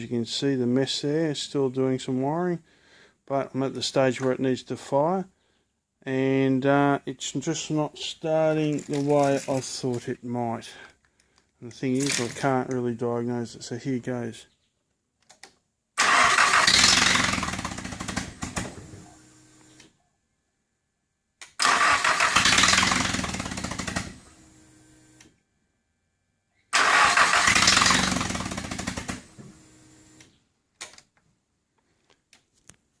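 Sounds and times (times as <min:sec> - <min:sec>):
engine cranking on starter: 0:16.0 - 0:19.0, 0:21.5 - 0:24.3, 0:26.7 - 0:29.4.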